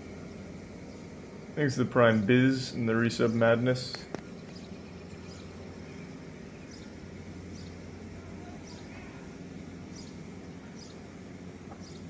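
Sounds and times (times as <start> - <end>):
vehicle engine running: 0.0 - 12.0
faint bird chirps: 4.1 - 11.1, 11.7 - 12.0.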